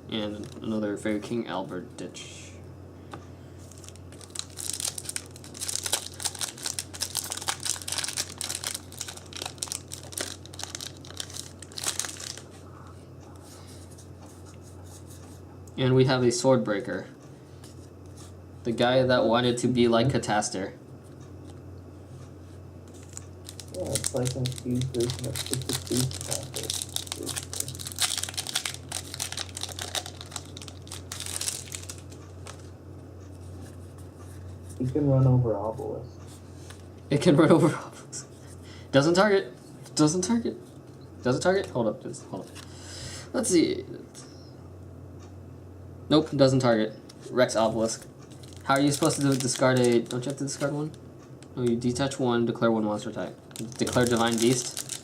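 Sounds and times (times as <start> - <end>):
low electrical hum: 0.0 - 55.0
foil wrappers crinkling and tearing: 3.6 - 12.6, 22.9 - 32.7, 47.7 - 51.0, 53.5 - 55.0.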